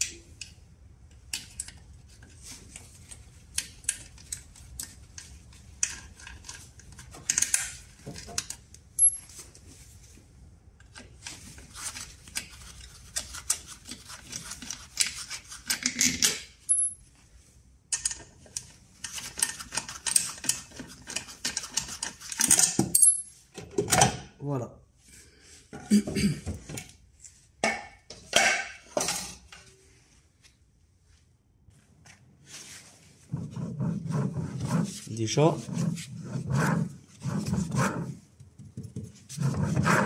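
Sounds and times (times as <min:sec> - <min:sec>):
metal tools and parts clinking: 0:08.3 - 0:09.4, 0:15.8 - 0:17.0, 0:21.2 - 0:23.6.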